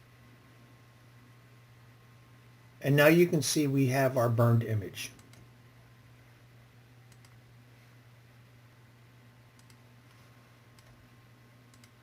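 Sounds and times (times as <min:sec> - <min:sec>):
low electrical hum: 0:00.0 - 0:12.0
computer mouse clicks: 0:07.1 - 0:07.4, 0:09.5 - 0:11.0, 0:11.7 - 0:12.0.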